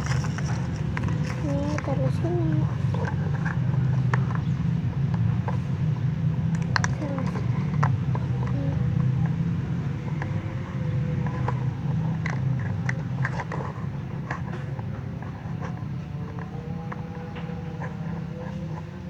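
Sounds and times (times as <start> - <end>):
plastic toy pieces clicking: 0.0 - 2.2
steady low hum: 0.0 - 19.0.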